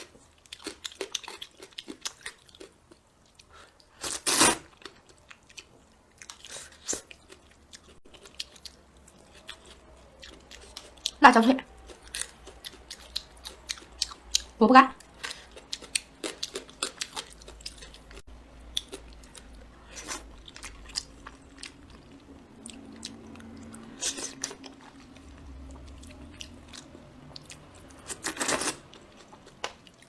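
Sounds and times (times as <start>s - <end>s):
chewing crunchy food: 0.0s - 30.0s.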